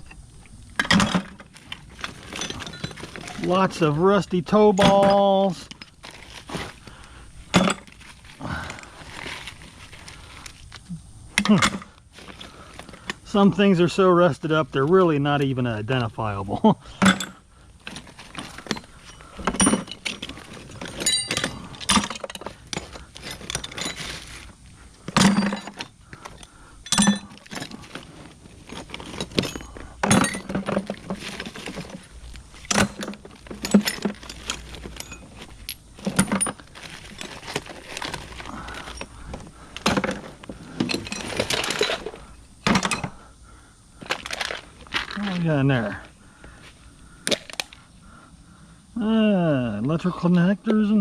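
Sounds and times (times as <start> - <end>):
metal tools clanking into bucket: 0.8 - 1.4, 2.0 - 3.9, 4.5 - 6.3, 7.5 - 8.0, 11.4 - 13.4, 16.9 - 24.4, 25.1 - 28.1, 28.7 - 43.2.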